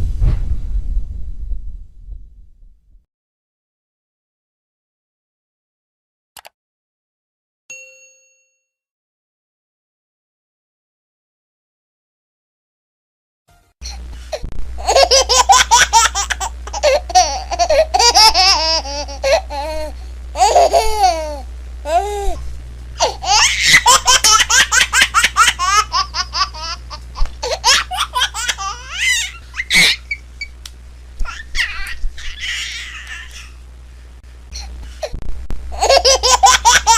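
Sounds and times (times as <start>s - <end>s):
low hum: 0.0s - 3.0s, 13.8s - 36.2s
young children laughing: 14.8s - 22.4s, 23.0s - 30.2s, 31.2s - 33.6s, 35.8s - 36.9s.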